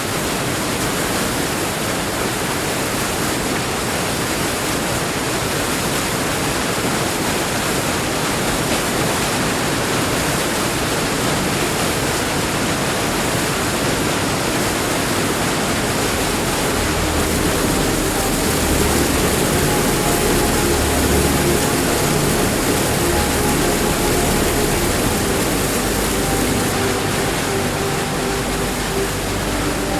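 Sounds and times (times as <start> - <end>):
waterfall rushing: 0.2 - 29.9
faint sustained musical tones: 12.7 - 29.9.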